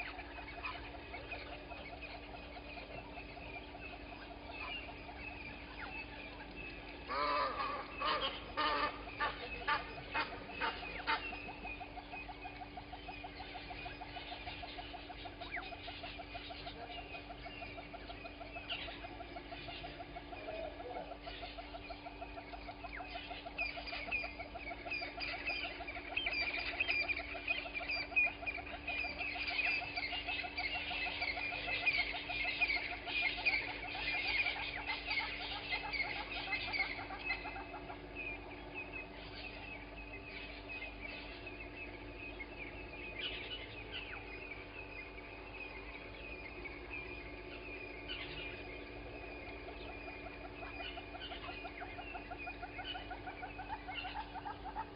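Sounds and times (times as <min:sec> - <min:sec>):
wild birds chattering and calling: 0:00.0 - 0:54.9.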